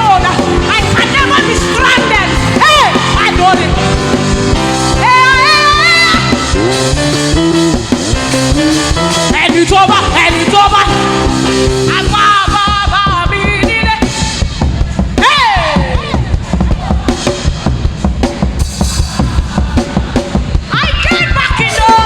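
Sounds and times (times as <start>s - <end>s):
band with drums and chords: 0.0s - 22.0s.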